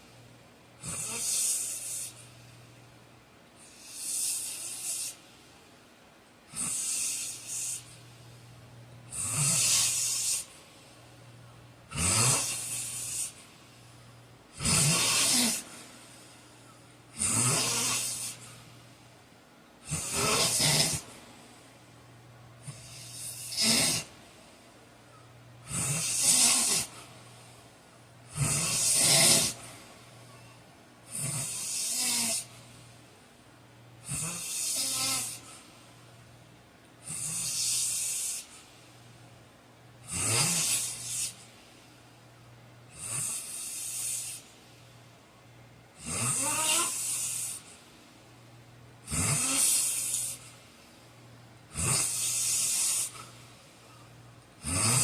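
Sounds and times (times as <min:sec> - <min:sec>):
faint low hum: 0:00.0 - 0:55.0
man snoring: 0:00.8 - 0:02.2, 0:03.6 - 0:05.2, 0:06.5 - 0:08.0, 0:09.1 - 0:10.6, 0:11.9 - 0:13.4, 0:14.5 - 0:15.8, 0:17.1 - 0:18.6, 0:19.8 - 0:21.2, 0:22.6 - 0:24.2, 0:25.6 - 0:27.0, 0:28.3 - 0:29.8, 0:31.0 - 0:32.5, 0:34.0 - 0:35.5, 0:37.0 - 0:38.5, 0:40.0 - 0:41.4, 0:42.9 - 0:44.4, 0:46.0 - 0:47.7, 0:49.0 - 0:50.4, 0:51.7 - 0:53.3, 0:54.6 - 0:55.0.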